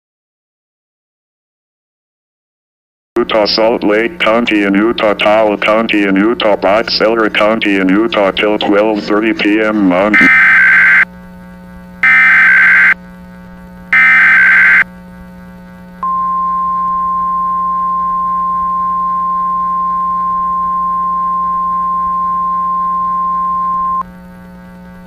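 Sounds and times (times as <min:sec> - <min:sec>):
low steady hum: 0:03.2 - 0:25.0
digital data bursts: 0:10.1 - 0:11.0, 0:12.0 - 0:13.0, 0:14.0 - 0:14.8
steady alert tone: 0:10.1 - 0:11.0, 0:12.0 - 0:13.0, 0:14.0 - 0:14.8.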